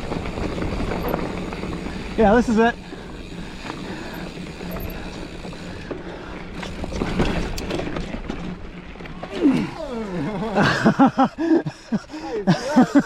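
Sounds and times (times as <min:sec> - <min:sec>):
bike rattles and clicks: 0:00.0 - 0:11.3
bike tyres rolling on dirt: 0:00.0 - 0:11.9.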